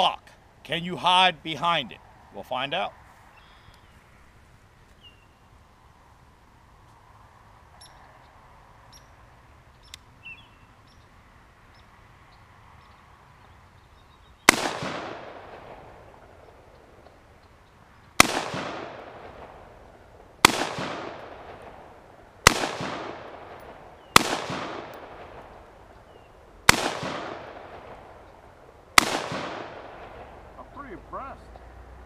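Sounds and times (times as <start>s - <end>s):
rifle shots with echo: 14.5s - 16.4s, 18.2s - 19.8s, 20.4s - 25.7s, 26.6s - 28.3s, 29.0s - 30.4s.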